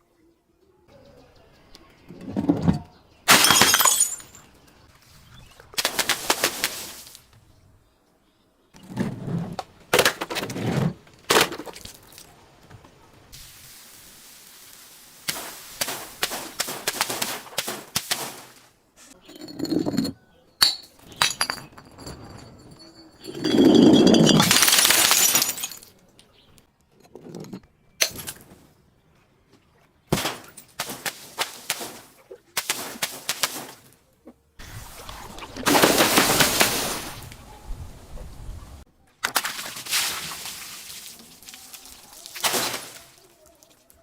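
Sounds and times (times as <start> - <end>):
loud glass crash: 3.3 - 4.4, 23.4 - 25.9, 42.3 - 43.2
glass bottles breaking: 3.3 - 4.5, 19.3 - 26.0, 39.2 - 43.3
glass clinking: 3.4 - 4.4, 19.2 - 25.9.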